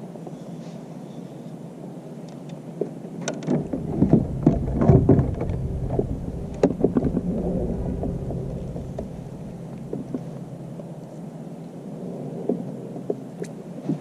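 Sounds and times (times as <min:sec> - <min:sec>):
water splashing: 0:03.5 - 0:11.2
low rumble: 0:03.5 - 0:12.2.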